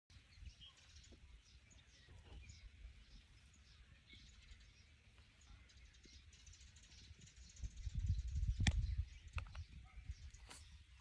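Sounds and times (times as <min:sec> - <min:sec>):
small birds chirping: 0:00.1 - 0:11.0.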